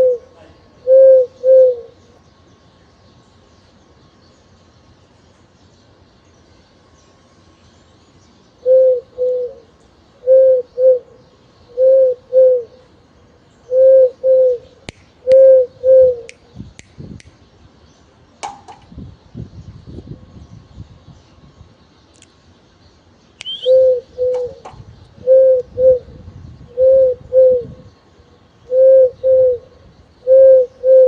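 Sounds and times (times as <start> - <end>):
dove cooing: 0.0 - 2.0, 8.6 - 12.9, 13.7 - 16.3, 23.6 - 27.9, 28.7 - 31.0.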